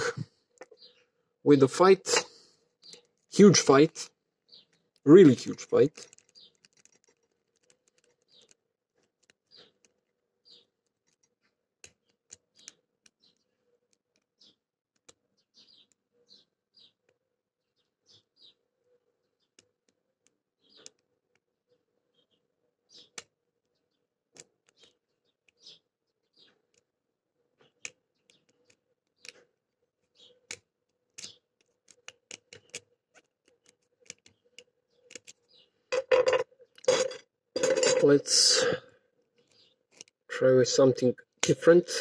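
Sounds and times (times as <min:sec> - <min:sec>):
lock pick clicking and scraping: 0:02.1 - 0:03.3, 0:04.5 - 0:16.9, 0:24.3 - 0:25.8, 0:27.6 - 0:29.4, 0:30.2 - 0:38.2, 0:39.4 - 0:40.3.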